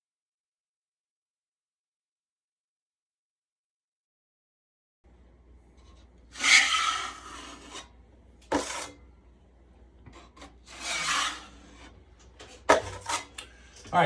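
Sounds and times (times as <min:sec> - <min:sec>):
drywall knife scraping wall: 0:06.3 - 0:09.0, 0:10.1 - 0:12.0.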